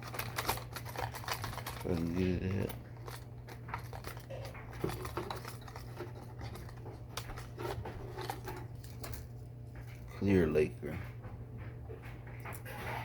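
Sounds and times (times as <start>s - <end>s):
plastic packaging crinkling and clicking: 0.0s - 10.1s.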